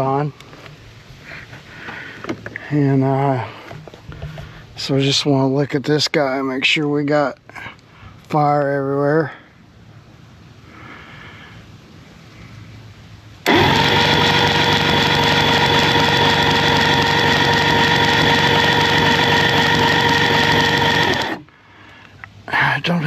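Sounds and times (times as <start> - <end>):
electric starter cranking engine: 13.4 - 21.5.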